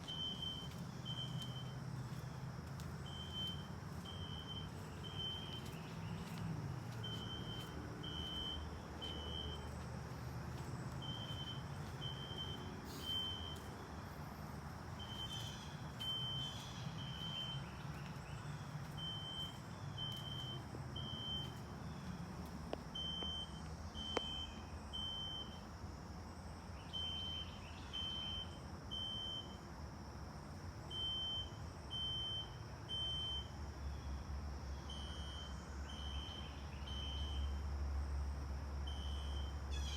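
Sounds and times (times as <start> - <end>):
fire alarm horn beeping: 0.0 - 1.8, 3.1 - 6.3, 11.0 - 13.7, 19.0 - 21.6, 26.9 - 29.6.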